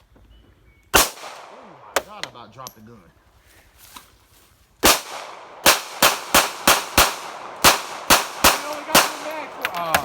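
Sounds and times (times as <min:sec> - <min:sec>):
pistol shots: 0:01.0 - 0:02.2, 0:04.8 - 0:09.6.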